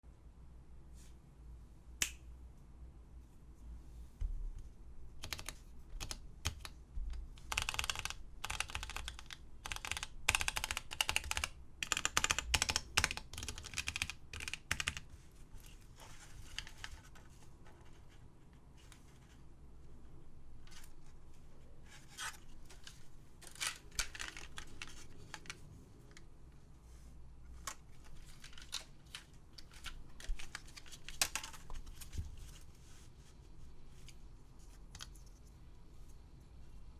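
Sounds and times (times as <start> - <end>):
keyboard keystroke clicks: 5.2 - 6.8.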